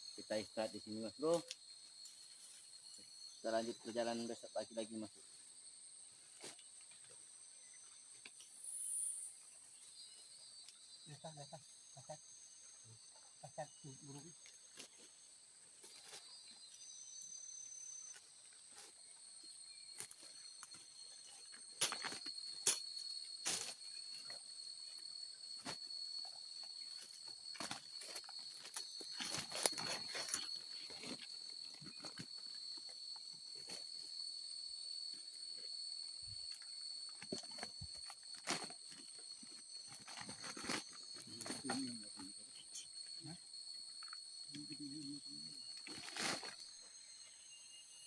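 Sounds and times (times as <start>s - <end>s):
forest insects droning: 0.0s - 48.0s
rustles: 25.0s - 34.2s, 36.4s - 43.4s, 44.0s - 47.0s.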